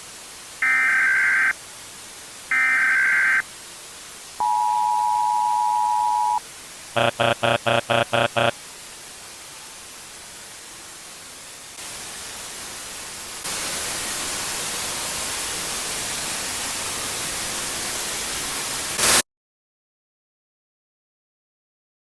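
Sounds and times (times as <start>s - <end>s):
short electronic beeps: 4.4s - 6.4s, 7.0s - 8.5s
static hiss: 6.5s - 16.2s, 18.6s - 19.2s.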